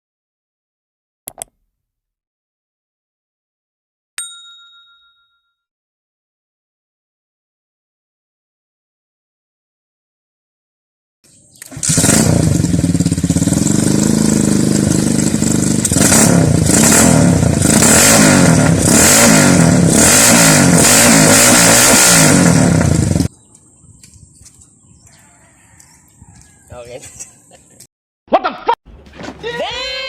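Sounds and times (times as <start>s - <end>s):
motorcycle engine revving: 11.6s - 23.3s.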